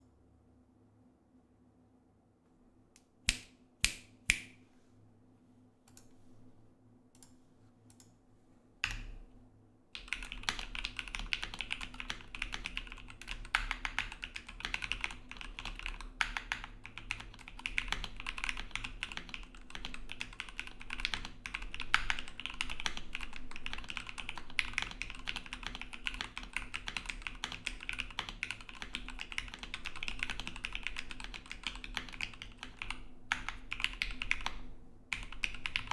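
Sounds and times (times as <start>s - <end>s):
mechanical keyboard typing: 10.0s - 35.9s.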